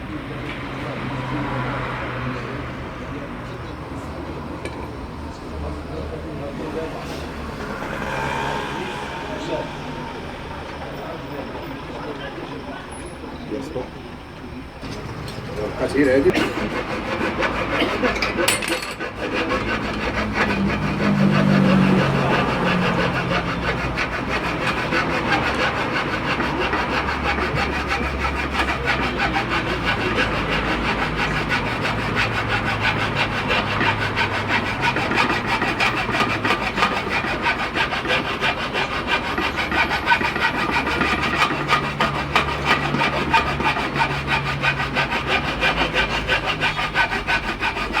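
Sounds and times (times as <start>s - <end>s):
rasping on a metal pot: 6.6s - 12.2s, 15.9s - 48.0s.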